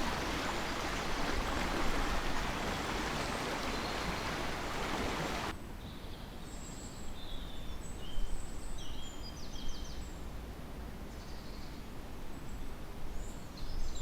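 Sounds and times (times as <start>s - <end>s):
small birds chirping: 0.0s - 5.5s
stream rushing: 0.0s - 5.6s.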